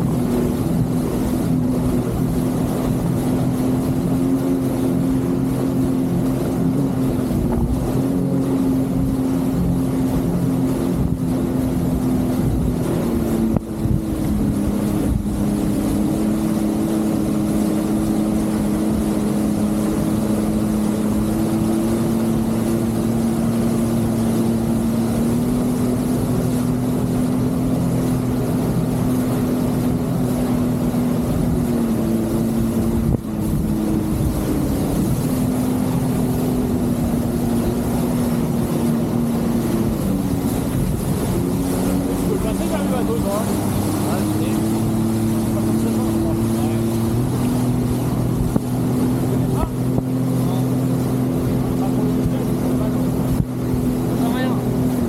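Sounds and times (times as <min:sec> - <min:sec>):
jet ski engine running: 0:00.0 - 0:55.0.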